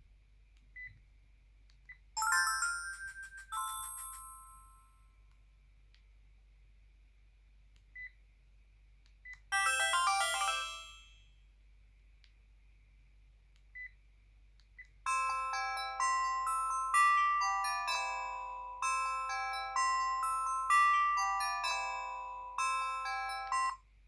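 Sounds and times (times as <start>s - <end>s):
polyphonic ringtone melody: 2.2s - 5.0s, 9.6s - 11.2s, 15.1s - 23.8s.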